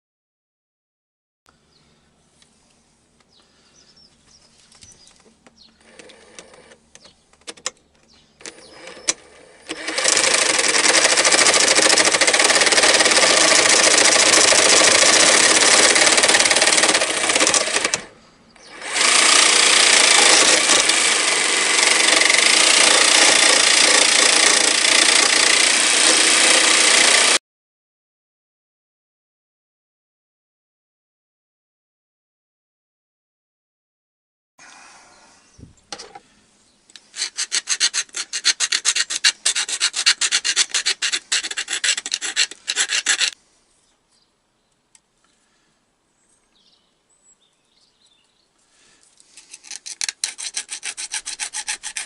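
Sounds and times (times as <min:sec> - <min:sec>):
small electric power tool running: 0:08.4 - 0:27.4, 0:37.2 - 0:43.4.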